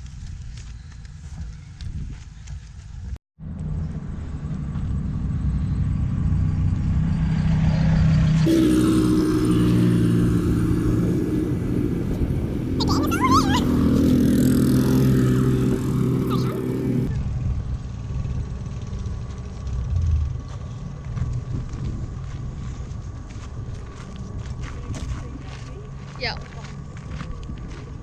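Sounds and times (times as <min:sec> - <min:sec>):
car engine and road hum: 0:03.4 - 0:28.0.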